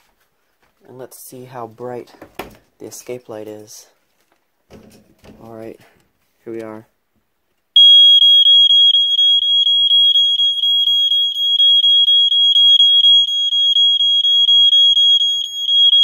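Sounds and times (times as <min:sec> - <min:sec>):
smoke detector alarm pulsing: 0:07.8 - 0:16.0.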